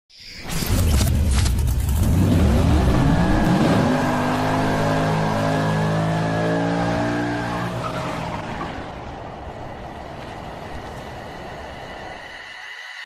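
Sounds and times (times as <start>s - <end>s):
car engine at high revs: 1.0s - 9.6s.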